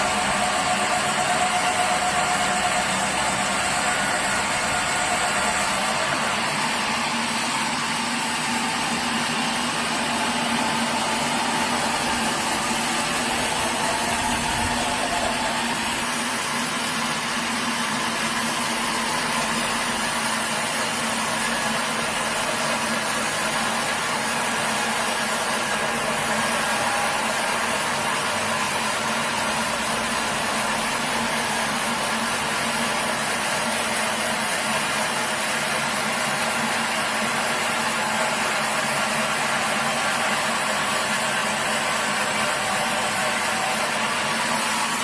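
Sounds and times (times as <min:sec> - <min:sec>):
sawmill machinery hum: 0:00.0 - 0:45.0.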